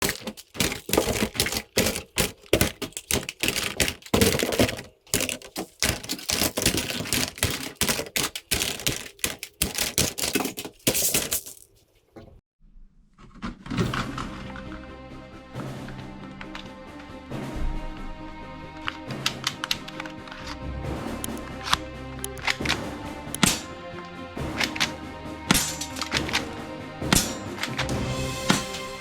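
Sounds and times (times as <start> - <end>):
sharp clicks and clatters: 0.0 - 11.7, 21.2 - 23.7
music: 0.1 - 4.6, 13.8 - 29.0.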